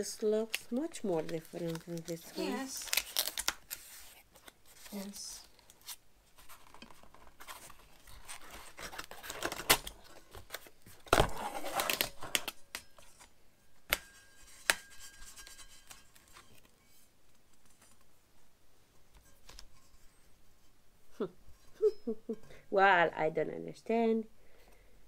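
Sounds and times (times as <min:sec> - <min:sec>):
packaging rustling and crinkling: 0:00.5 - 0:13.3.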